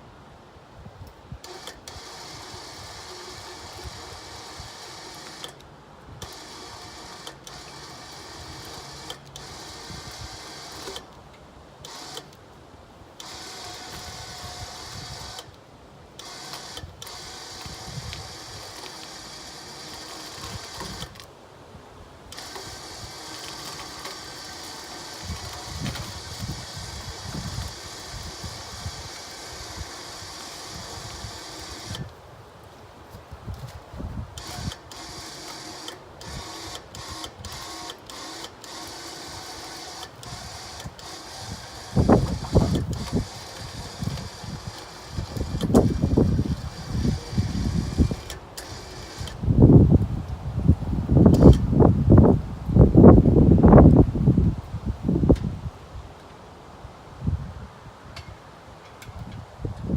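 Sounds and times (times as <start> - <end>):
electric winch motor whirring: 1.4 - 12.4, 13.2 - 21.3, 22.3 - 32.2, 33.5 - 54.1.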